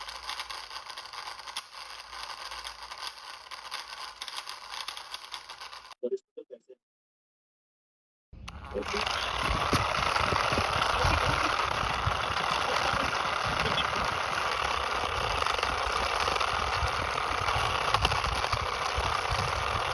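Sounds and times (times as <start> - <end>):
engine running with low rumble: 8.4 - 19.9.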